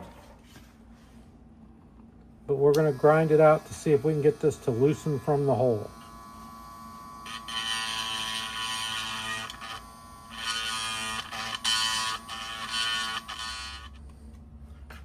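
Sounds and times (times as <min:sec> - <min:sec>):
rotary tool whining: 0:02.7 - 0:14.1
rotary tool grinding plastic: 0:03.2 - 0:14.0.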